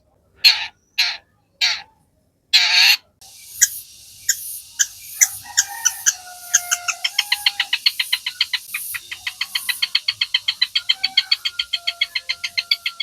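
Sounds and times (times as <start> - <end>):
bird singing varied song: 3.2 - 13.0.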